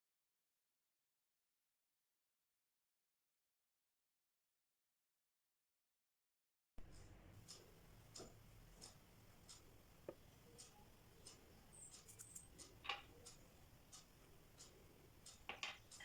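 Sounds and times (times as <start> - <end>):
faint ticking: 6.8 - 16.0.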